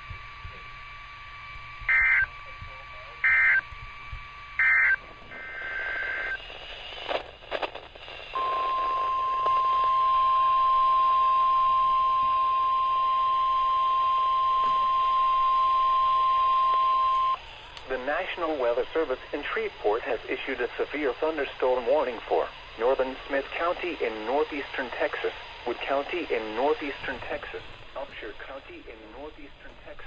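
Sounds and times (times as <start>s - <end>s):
warbling data tone bursts: 1.8s - 2.4s, 3.1s - 3.7s, 4.5s - 6.4s, 8.4s - 17.4s
single-pitched alarm tone: 1.9s - 2.4s, 3.2s - 3.6s, 4.6s - 6.4s, 8.4s - 17.4s.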